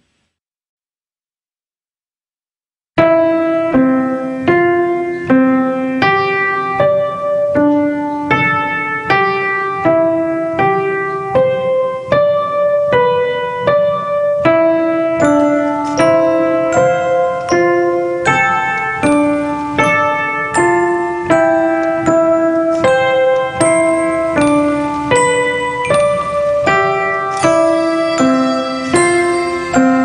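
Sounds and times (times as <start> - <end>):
piano chords and melody: 3.0 - 30.0
high chiming notes: 15.2 - 30.0.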